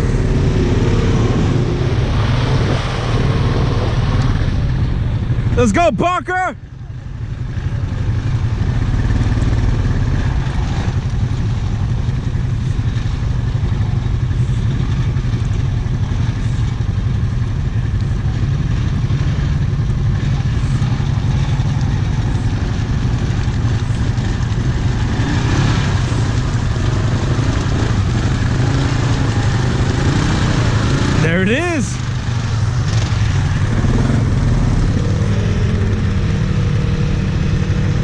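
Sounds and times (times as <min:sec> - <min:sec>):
quad engine running: 0:00.0 - 0:38.0.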